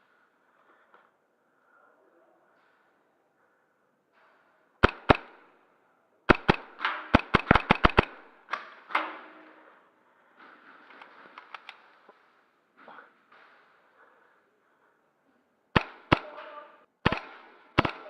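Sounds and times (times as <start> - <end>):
airsoft pistol shots: 4.8 - 5.5, 6.3 - 8.5, 15.8 - 16.4, 17.0 - 18.0.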